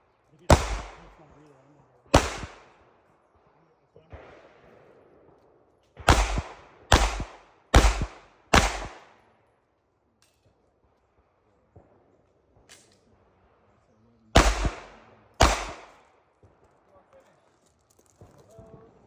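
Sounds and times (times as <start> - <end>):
pistol shots: 0.5 - 1.3, 2.1 - 2.8, 6.0 - 9.2, 14.4 - 16.2.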